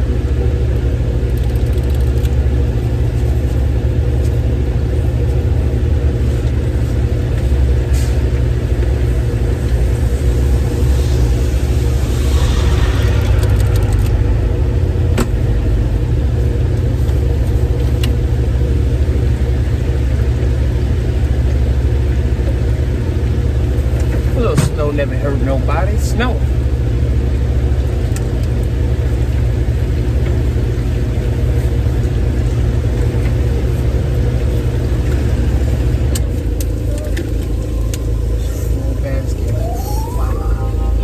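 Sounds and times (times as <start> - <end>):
engine humming: 0.0 - 41.0
hissing: 9.5 - 16.3.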